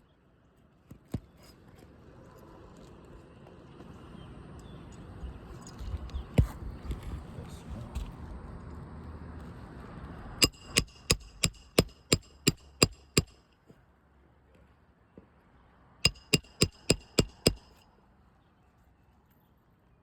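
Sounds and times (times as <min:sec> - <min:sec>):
hammer striking metal: 0:10.4 - 0:13.4, 0:16.0 - 0:17.8.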